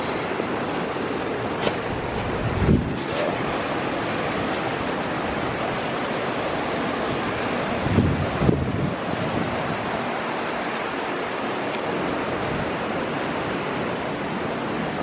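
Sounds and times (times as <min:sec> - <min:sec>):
rushing wind and water: 0:00.0 - 0:15.0
wind buffets on microphone: 0:01.8 - 0:03.7, 0:06.7 - 0:10.7.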